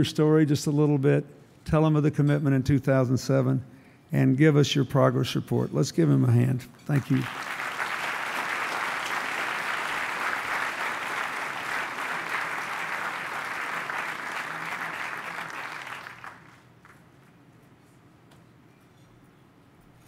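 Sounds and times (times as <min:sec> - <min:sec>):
audience applauding: 0:07.0 - 0:17.0.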